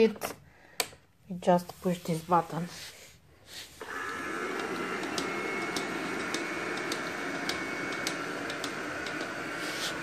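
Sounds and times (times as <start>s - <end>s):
robot vacuum motor whir: 3.8s - 10.0s.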